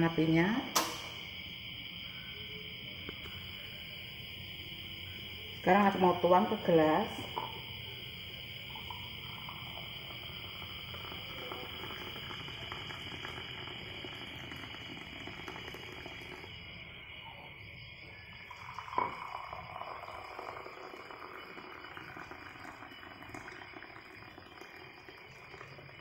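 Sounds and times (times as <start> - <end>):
insects chirring: 0.0 - 26.0
sharp knock: 0.8 - 1.2
liquid pouring into glass: 7.1 - 16.7, 18.4 - 26.0.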